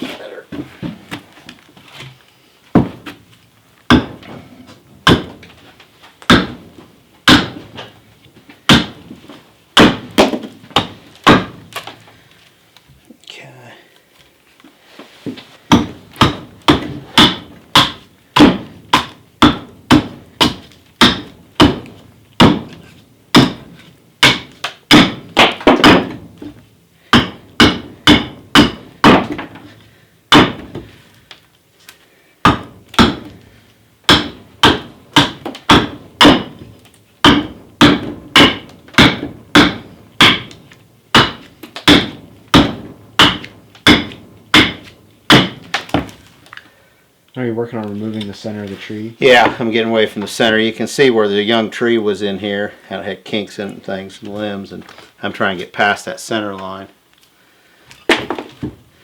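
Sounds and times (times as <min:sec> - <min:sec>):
axe chopping wood: 0:02.8 - 0:03.2, 0:03.9 - 0:04.4, 0:05.0 - 0:05.5, 0:06.2 - 0:08.0, 0:08.7 - 0:09.1, 0:09.8 - 0:12.0, 0:15.7 - 0:30.9, 0:32.4 - 0:33.5, 0:34.1 - 0:46.2, 0:58.1 - 0:58.8.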